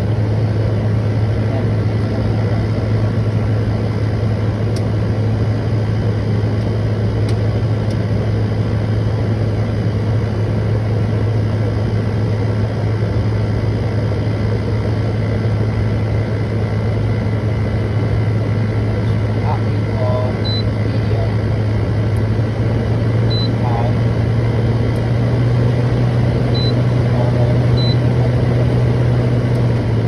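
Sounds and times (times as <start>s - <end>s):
window air conditioner running: 0.1s - 9.8s, 10.5s - 30.0s.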